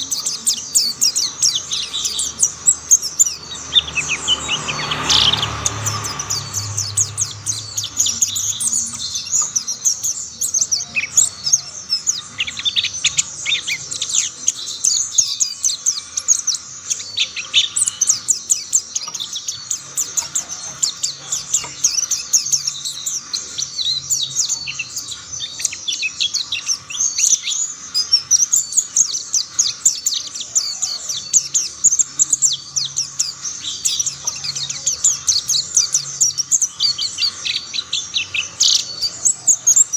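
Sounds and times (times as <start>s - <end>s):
birds twittering song: 0.0s - 39.9s.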